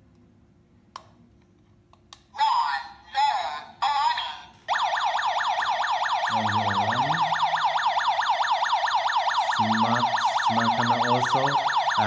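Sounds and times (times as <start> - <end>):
warbling alarm siren: 4.7 - 12.0.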